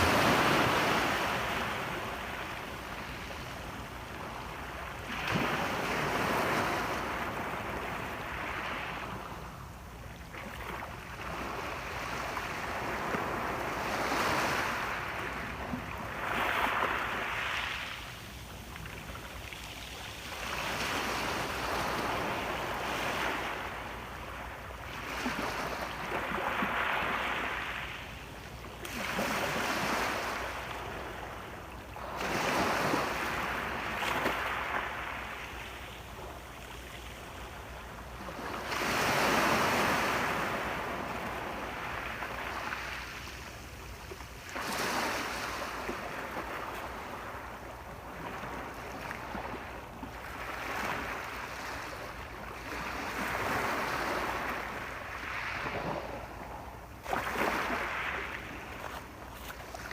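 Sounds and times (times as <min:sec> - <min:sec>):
ocean waves breaking on shore: 0:00.0 - 0:59.9.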